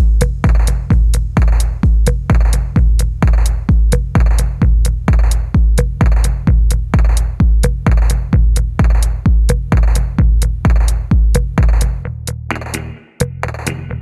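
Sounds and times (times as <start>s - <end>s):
hi-hat clicks: 0.0s - 13.9s
heavy kick drum: 0.0s - 14.0s
electronic music: 12.5s - 14.0s.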